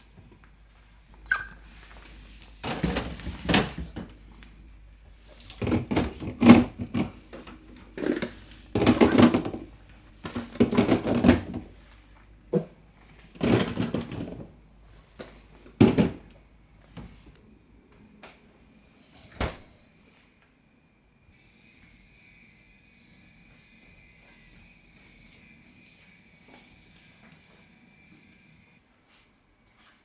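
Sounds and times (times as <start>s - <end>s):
containers clattering in refrigerator: 2.6s - 4.2s, 5.3s - 11.8s, 12.5s - 14.6s, 15.2s - 16.4s.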